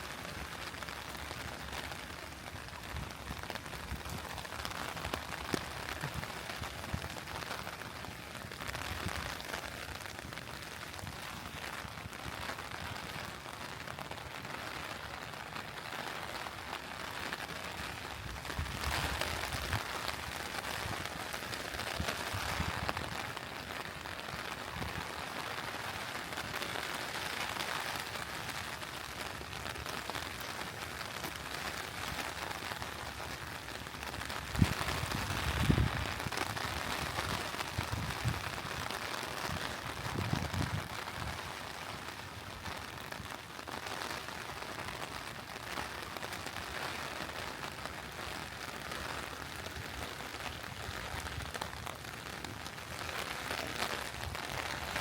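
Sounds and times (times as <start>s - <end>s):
steady rain: 0.0s - 55.0s
thunder rumbling: 34.5s - 42.2s.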